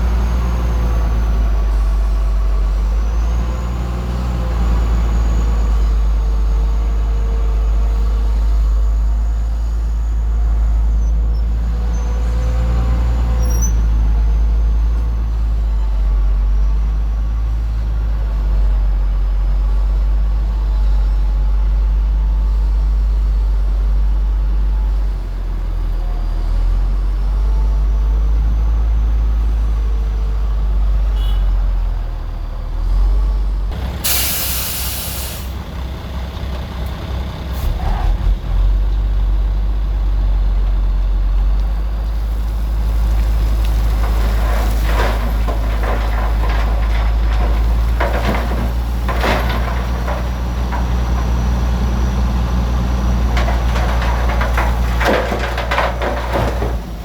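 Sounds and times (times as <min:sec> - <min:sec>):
diesel machinery rumbling: 0:00.0 - 0:57.0
loud air hiss: 0:34.0 - 0:35.6.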